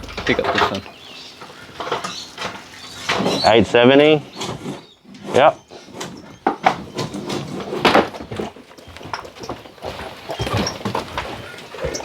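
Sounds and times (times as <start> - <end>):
low background rumble: 0.0 - 1.4.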